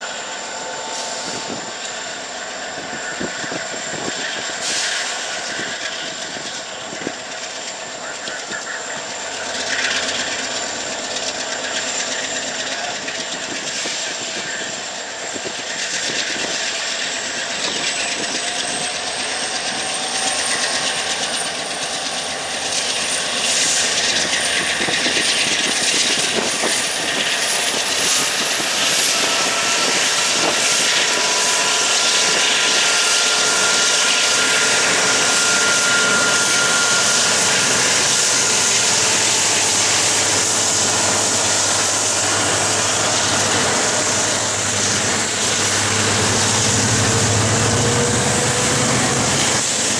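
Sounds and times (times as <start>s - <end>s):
diesel locomotives accelerating: 0.0s - 49.9s
high engine whine: 0.0s - 49.9s.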